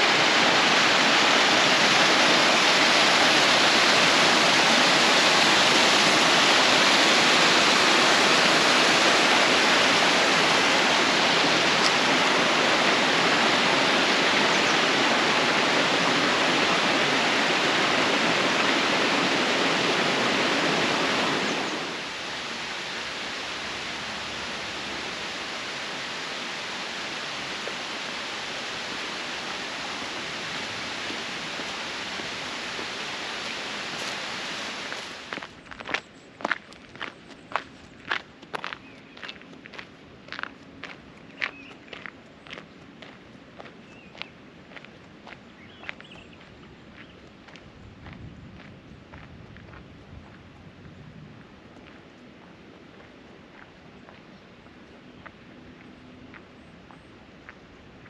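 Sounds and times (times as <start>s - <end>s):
flowing water rushing: 0.0s - 35.6s.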